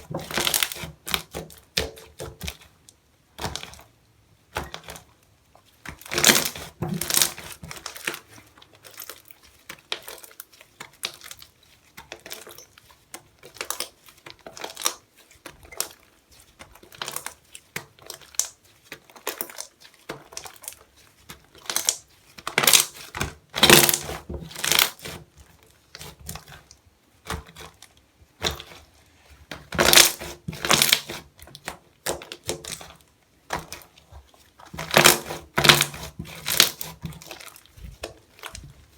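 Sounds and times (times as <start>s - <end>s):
slime squishing and popping: 5.9s - 8.2s, 21.5s - 25.0s, 29.6s - 31.2s, 34.6s - 37.5s.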